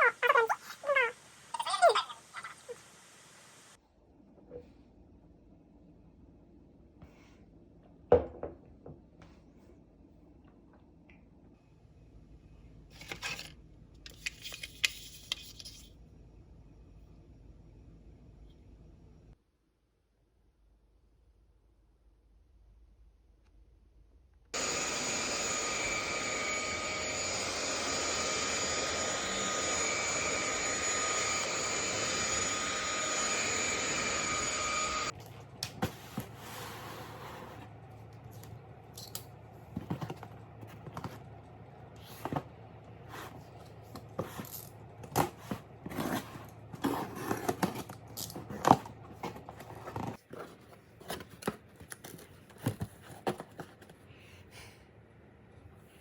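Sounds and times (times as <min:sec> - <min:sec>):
whirring machine: 0:24.6 - 0:35.2.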